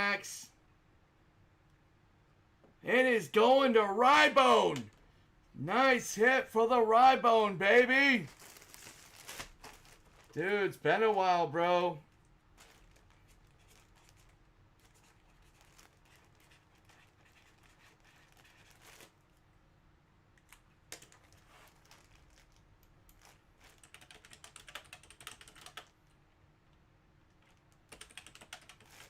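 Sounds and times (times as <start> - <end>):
typing on computer keyboard: 20.9 - 21.4, 23.6 - 26.0, 27.4 - 29.0.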